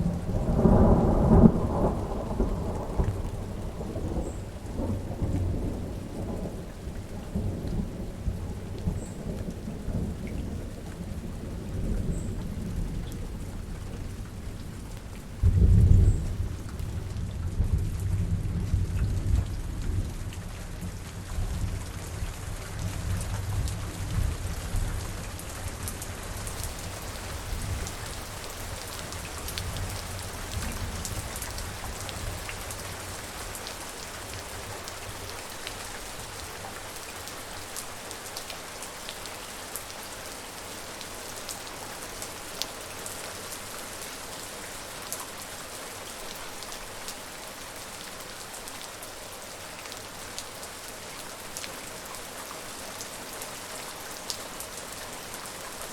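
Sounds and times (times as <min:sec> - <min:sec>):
low rumble of thunder: 0:00.0 - 0:14.5, 0:15.3 - 0:35.3
steady rain falling: 0:00.0 - 0:55.9.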